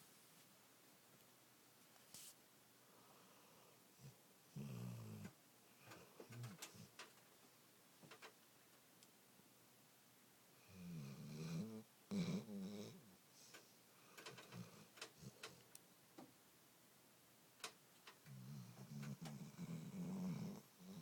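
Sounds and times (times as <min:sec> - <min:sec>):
dog snoring: 0:04.0 - 0:07.0, 0:10.6 - 0:13.0, 0:14.2 - 0:15.6, 0:18.3 - 0:21.0.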